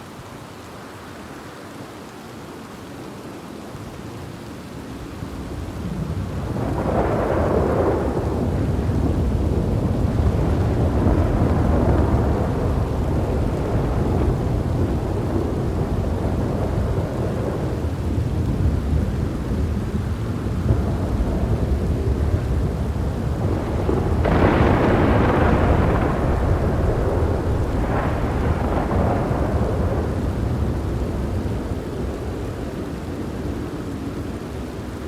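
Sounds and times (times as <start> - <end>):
steady rain: 0.0 - 35.0
low rolling thunder: 5.0 - 35.0
sharp thunderclap: 5.9 - 32.6.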